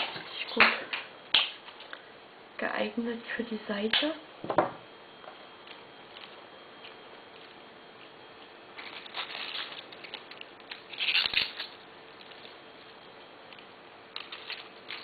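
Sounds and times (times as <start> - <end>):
flower stems rustling and crackling: 5.6 - 15.0.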